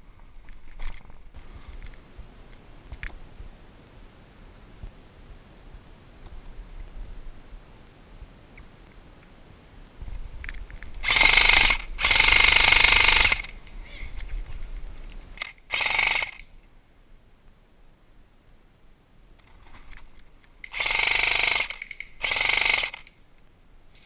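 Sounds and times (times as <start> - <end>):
airsoft gun full-auto bursts: 11.0 - 13.6, 15.4 - 16.5, 20.7 - 23.2.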